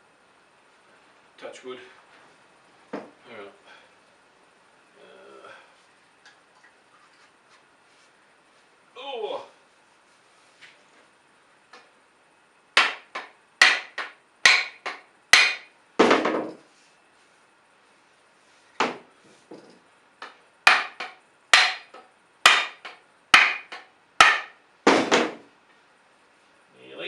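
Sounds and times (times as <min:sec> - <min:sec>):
hammer striking axe head: 0:12.8 - 0:16.5, 0:20.2 - 0:25.4.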